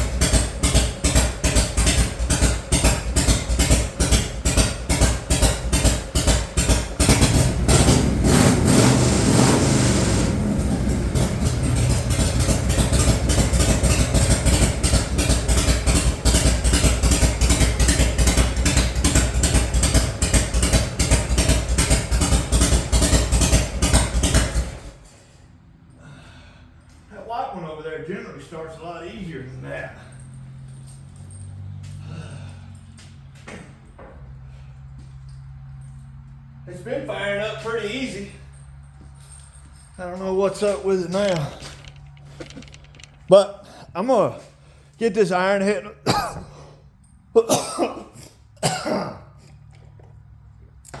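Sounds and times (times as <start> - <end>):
motorcycle engine idling and revving: 0.0 - 26.0, 28.2 - 47.4.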